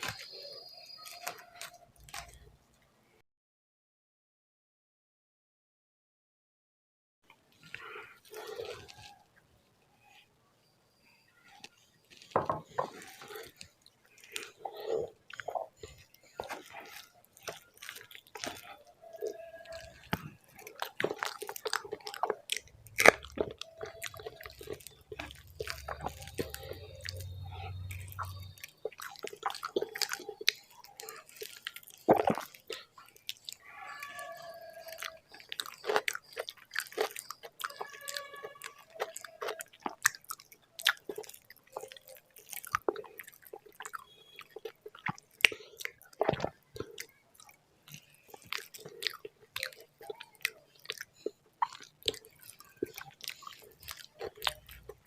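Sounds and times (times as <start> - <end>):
close chewing mouth sounds: 0.0 - 2.6, 7.5 - 9.4, 11.3 - 55.0.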